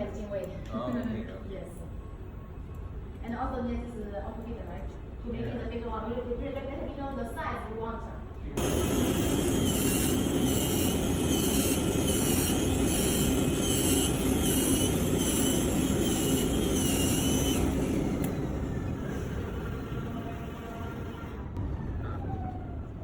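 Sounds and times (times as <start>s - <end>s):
cutting machine running: 8.6s - 21.5s
wavering high whine: 8.6s - 23.0s.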